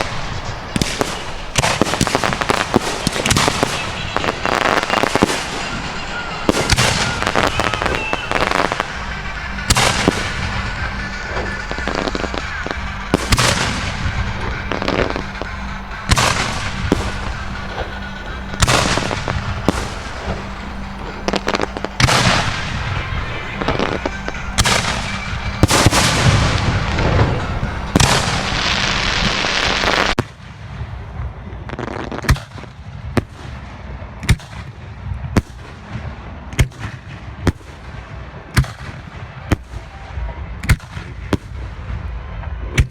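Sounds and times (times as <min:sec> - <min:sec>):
firework shells bursting: 0:00.0 - 0:30.2.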